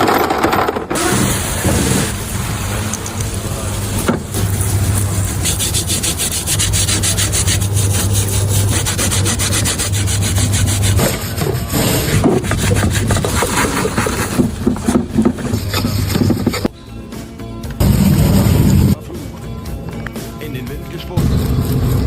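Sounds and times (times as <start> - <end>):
scrubbing strokes on metal part: 4.7 - 16.7.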